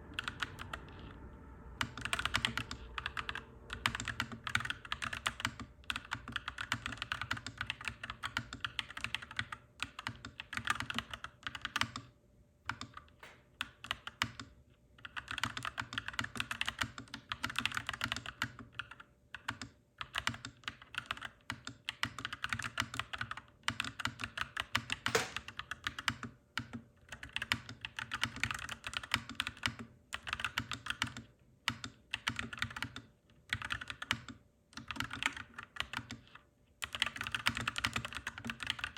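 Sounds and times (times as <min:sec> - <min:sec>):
steady low hum: 0:00.0 - 0:07.2
mechanical keyboard typing: 0:01.8 - 0:12.1, 0:12.7 - 0:38.9.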